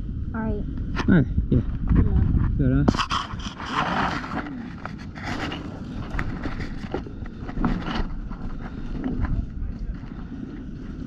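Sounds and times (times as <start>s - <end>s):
low rumbling noise: 0.0s - 11.0s
light taps and scrapes: 1.8s - 10.7s.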